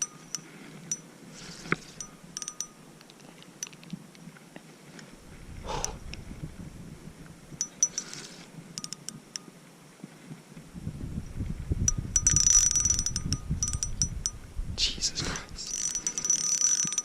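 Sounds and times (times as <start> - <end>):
fishing reel drag ticking: 0.0 - 2.8, 7.6 - 9.2, 11.9 - 14.4, 15.6 - 17.0.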